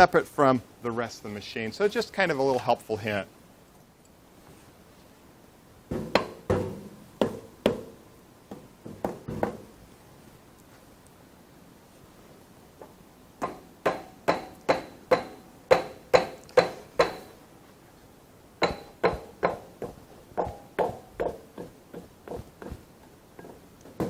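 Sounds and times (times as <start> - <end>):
hammer striking cast iron: 5.9 - 7.9, 13.4 - 17.4, 18.6 - 22.8.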